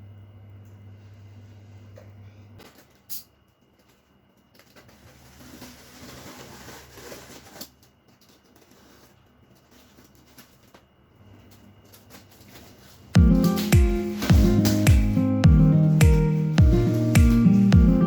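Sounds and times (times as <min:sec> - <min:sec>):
packaging rustling: 0:03.8 - 0:15.1, 0:15.8 - 0:17.8.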